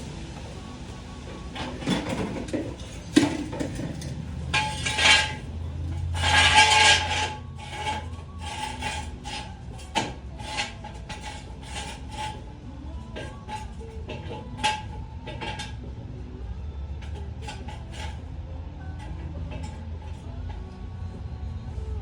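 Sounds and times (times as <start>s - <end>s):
metal tools clinking and scraping: 1.5s - 12.4s, 13.1s - 15.9s, 17.0s - 18.3s, 19.0s - 20.6s
rasping scrape: 1.9s - 15.9s, 16.9s - 20.7s.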